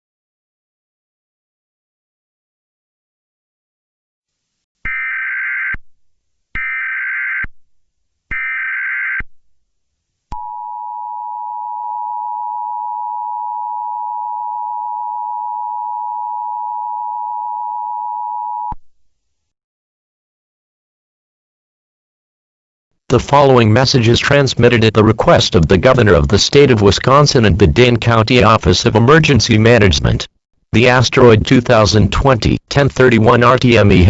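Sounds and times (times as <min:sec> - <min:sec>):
steady two-tone attention signal: 0:10.4 - 0:18.8.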